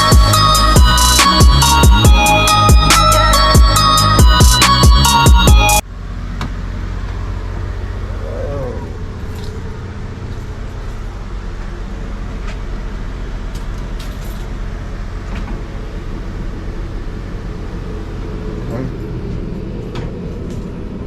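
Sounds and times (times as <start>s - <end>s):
bus engine humming: 0.0s - 21.0s.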